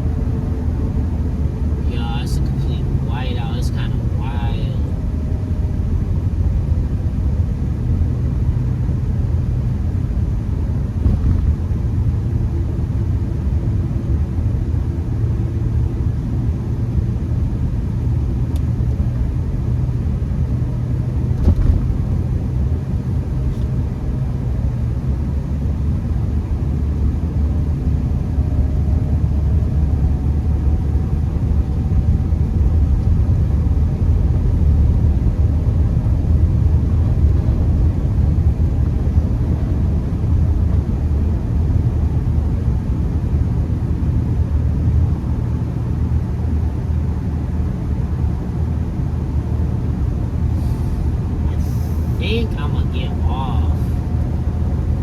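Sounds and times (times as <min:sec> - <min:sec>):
faint hum: 0:00.0 - 0:07.3, 0:48.2 - 0:55.0
car engine and tyres rumbling: 0:00.0 - 0:55.0.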